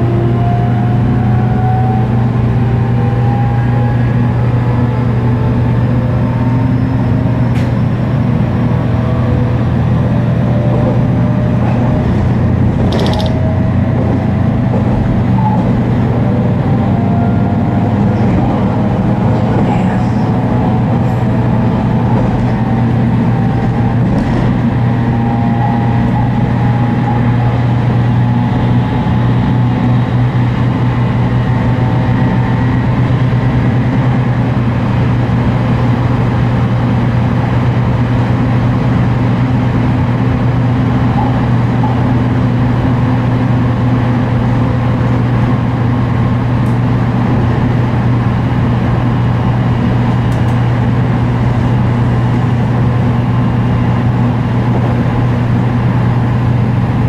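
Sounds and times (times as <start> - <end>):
heavy low drone: 0.0 - 57.0.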